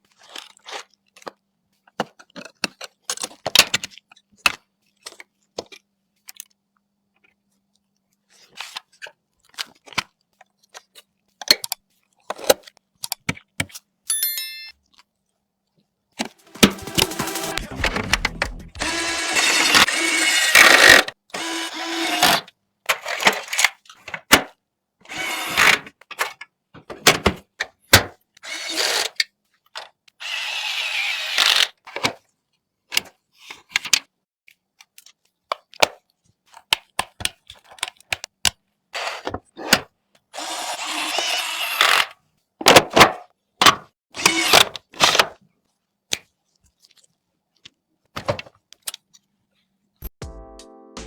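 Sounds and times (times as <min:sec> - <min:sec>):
scraping or whirring bursts: 0:16.3 - 0:21.0.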